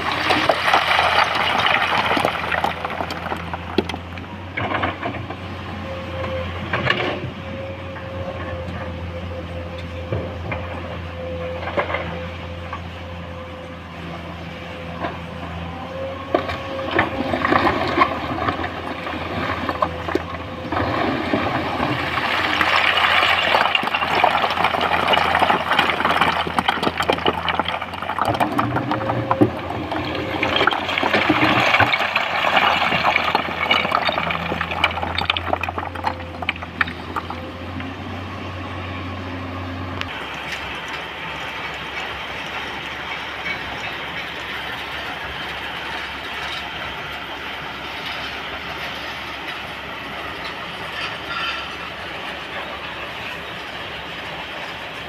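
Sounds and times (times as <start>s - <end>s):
loose rock pouring and rattling: 0.0s - 4.9s, 17.0s - 37.5s
excavator diesel engine running: 0.0s - 55.0s.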